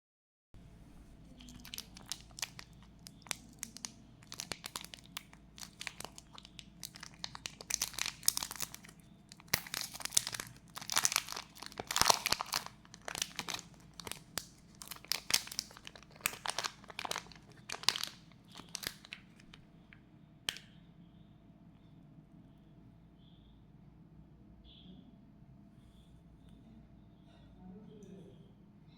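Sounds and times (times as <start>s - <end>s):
packaging torn and crinkled: 1.4s - 19.6s.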